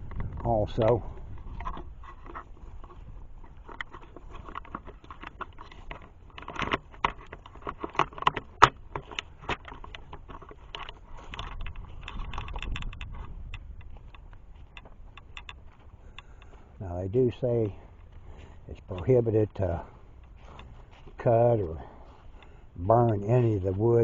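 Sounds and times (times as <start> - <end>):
footsteps on leaves and twigs: 8.5 - 24.0.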